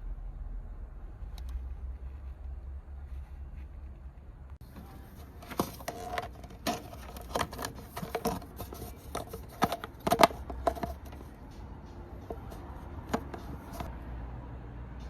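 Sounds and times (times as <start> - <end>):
sharp clicks and light knocks: 4.5 - 11.4.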